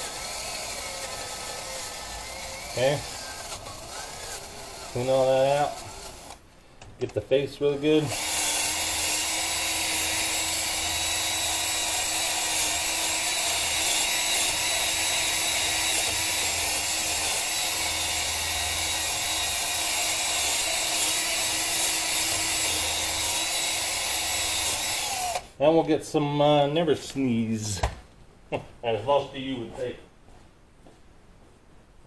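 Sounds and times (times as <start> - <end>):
drill motor hum: 0.0 - 6.4, 8.1 - 25.5.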